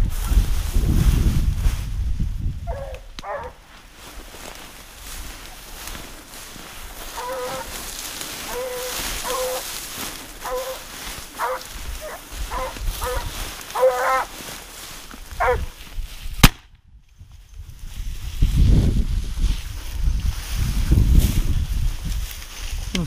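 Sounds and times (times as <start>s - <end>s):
dogs barking: 2.7s - 3.6s, 7.1s - 7.8s, 8.4s - 9.7s, 10.4s - 14.4s, 15.4s - 15.7s
sharp crack: 16.4s - 16.8s.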